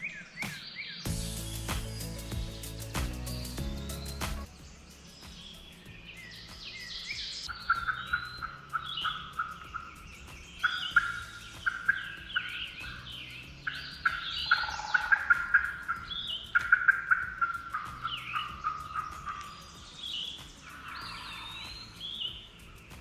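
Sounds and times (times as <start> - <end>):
songbirds chirping: 0.0 - 23.0.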